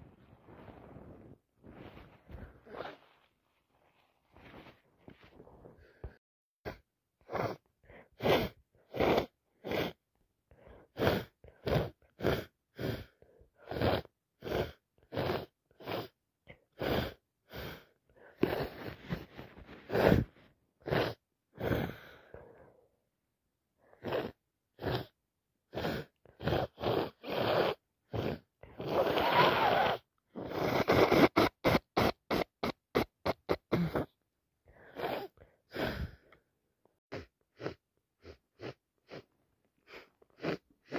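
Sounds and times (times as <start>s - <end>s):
person sniffing: 0.5s - 3.3s, 4.4s - 10.0s, 16.8s - 22.2s, 25.7s - 34.2s, 34.8s - 36.4s, 37.1s - 40.9s
nasal bursts: 25.8s - 34.2s.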